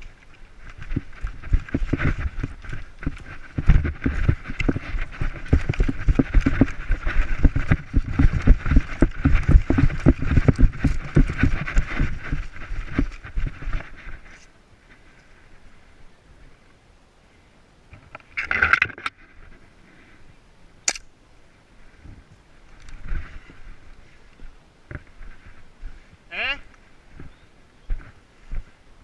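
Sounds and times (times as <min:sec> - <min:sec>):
gear jostling: 0:00.0 - 0:14.4
running footsteps: 0:00.0 - 0:15.3, 0:21.9 - 0:28.8.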